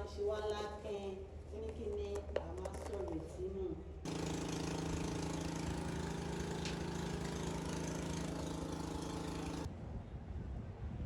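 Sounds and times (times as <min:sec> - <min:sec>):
small engine running: 0:04.1 - 0:09.7.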